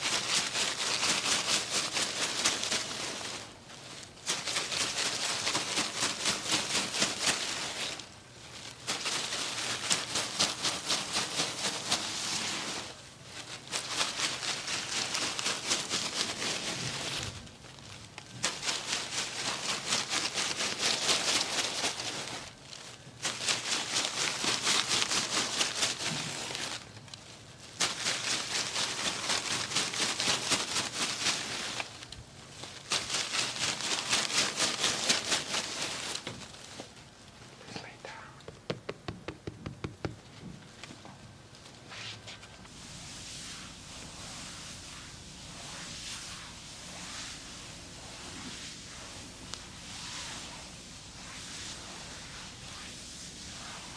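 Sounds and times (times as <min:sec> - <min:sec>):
rapid percussive massage tapping: 0:38.4 - 0:40.2.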